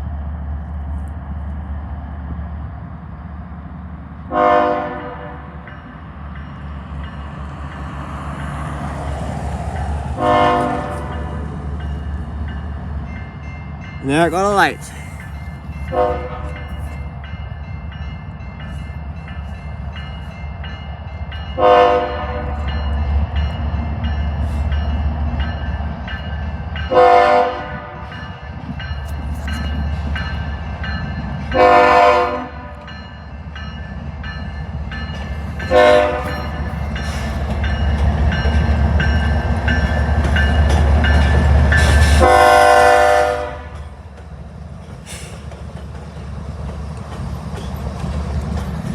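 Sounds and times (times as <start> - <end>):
locomotive air horn blasts: 4.3 - 5.3, 31.6 - 32.6, 42.2 - 43.8.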